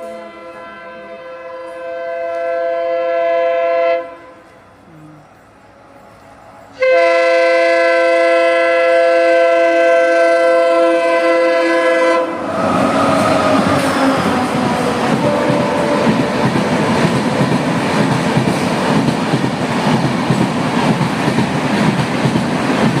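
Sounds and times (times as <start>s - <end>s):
locomotive air horn blasts: 0.0s - 4.5s, 6.8s - 16.5s
passing train rolling noise: 0.0s - 23.0s.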